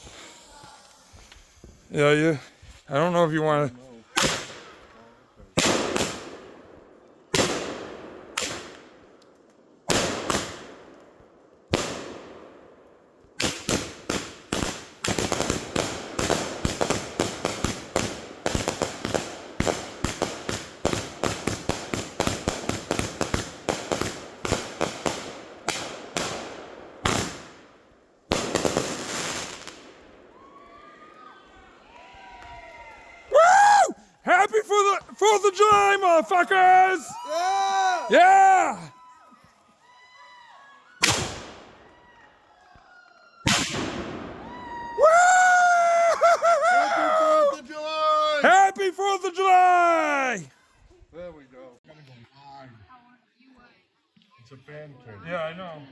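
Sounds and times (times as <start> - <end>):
firework bangs and crackling barrage: 4.1 - 30.7, 41.0 - 42.2, 43.4 - 45.8.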